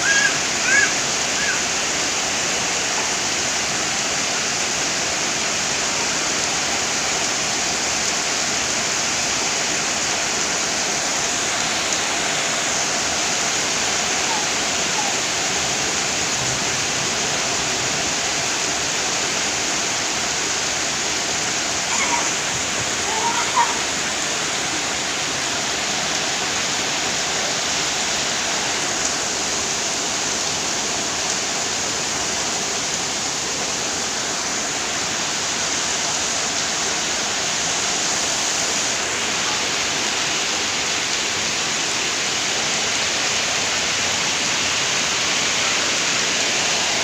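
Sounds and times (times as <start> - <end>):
heavy rain pouring: 0.0 - 47.0.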